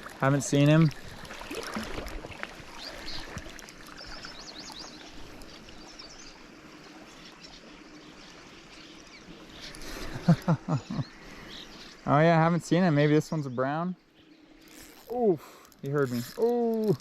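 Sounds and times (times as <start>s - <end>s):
river water rushing: 0.0s - 8.8s.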